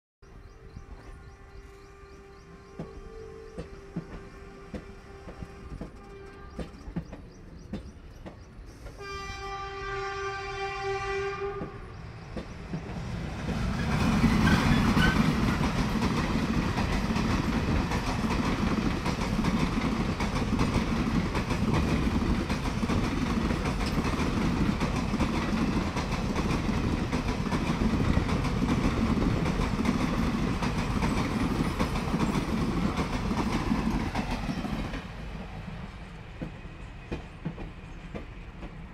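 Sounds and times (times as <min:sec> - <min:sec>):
train passing with rumble: 0:00.2 - 0:38.9
locomotive horn blast: 0:01.1 - 0:06.8, 0:09.0 - 0:11.9
train wheel clatter: 0:02.7 - 0:09.1, 0:11.6 - 0:38.9.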